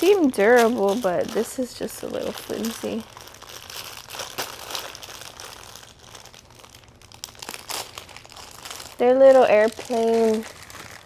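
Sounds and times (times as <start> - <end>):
packaging crinkling: 0.0 - 11.0.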